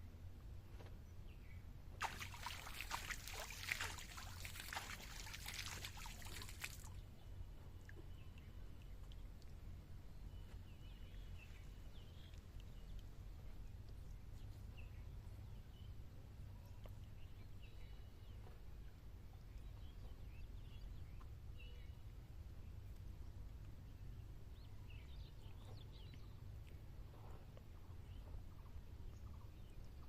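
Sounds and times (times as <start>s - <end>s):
birds chirping: 2.0s - 7.0s.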